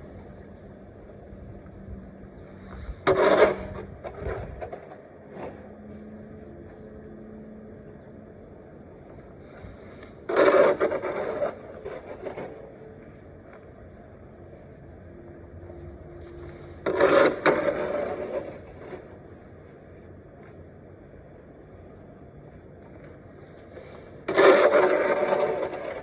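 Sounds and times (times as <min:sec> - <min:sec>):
rasping scrapes in snow: 0:02.5 - 0:04.8, 0:09.4 - 0:12.6, 0:16.2 - 0:19.0, 0:24.3 - 0:26.0.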